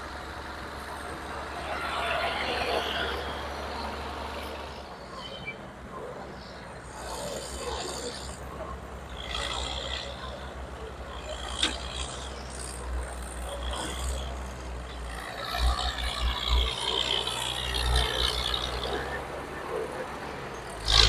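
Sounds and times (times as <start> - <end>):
large engine rumbling: 0.0 - 21.0.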